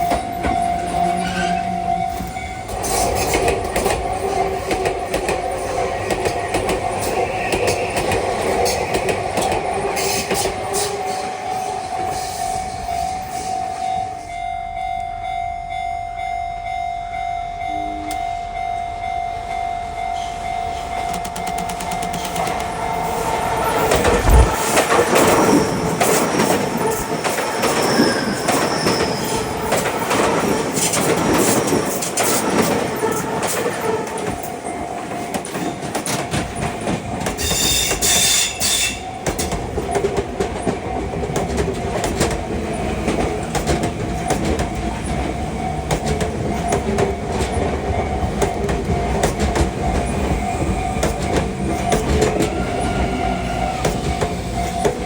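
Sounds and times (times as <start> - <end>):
high-pitched wheel squeal: 0.5 - 2.1.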